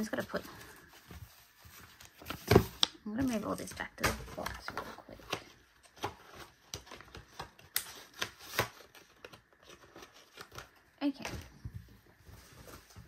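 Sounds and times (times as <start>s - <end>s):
paper and cards being handled: 0.0s - 13.0s.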